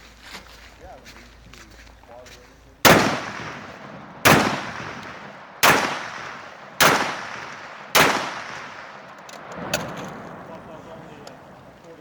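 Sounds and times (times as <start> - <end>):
rifle shots echoing: 2.8 - 12.0.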